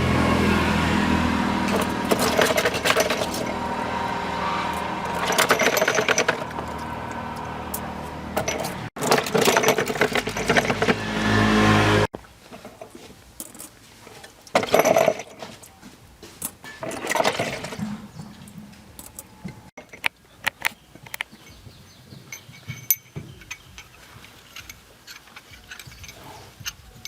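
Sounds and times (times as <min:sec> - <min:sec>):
tractor engine running: 0:00.0 - 0:12.1
metal parts clinking and knocking: 0:01.7 - 0:03.8, 0:04.7 - 0:06.8, 0:07.7 - 0:11.0, 0:12.6 - 0:13.8, 0:14.5 - 0:15.4, 0:18.9 - 0:21.6, 0:22.3 - 0:27.0.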